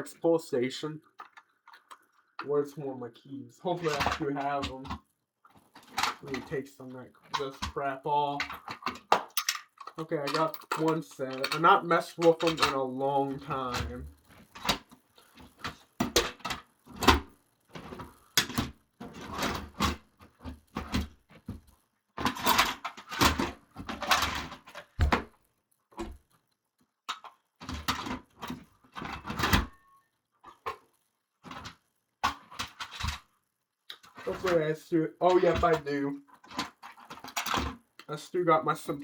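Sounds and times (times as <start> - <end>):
knocks and rattles of rummaging: 1.0 - 38.0.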